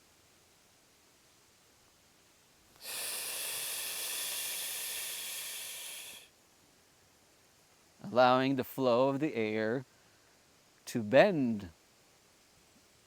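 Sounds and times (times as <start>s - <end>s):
person exhaling: 2.8s - 6.3s.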